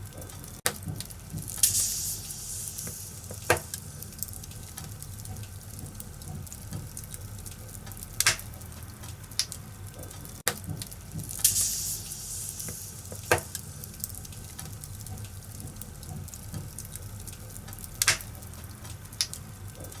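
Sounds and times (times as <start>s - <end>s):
fire popping: 0.0s - 20.0s
wood fire crackling: 0.0s - 20.0s
short hiss: 1.6s - 4.1s, 11.4s - 14.0s.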